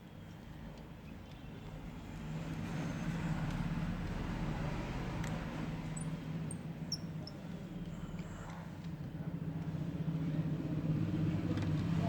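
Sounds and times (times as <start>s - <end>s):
faint small clicks: 0.3s - 1.7s, 5.2s - 5.4s.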